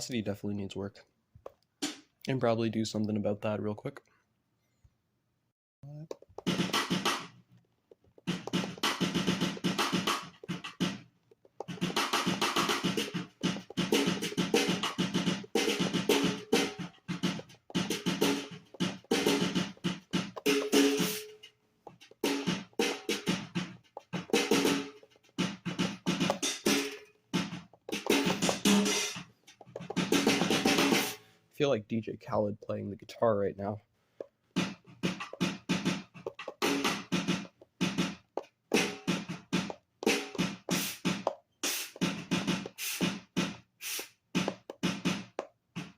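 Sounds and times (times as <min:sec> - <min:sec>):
rapid drum hits: 0:06.4 - 0:07.4, 0:08.2 - 0:21.4, 0:22.1 - 0:31.2, 0:34.6 - 0:43.6.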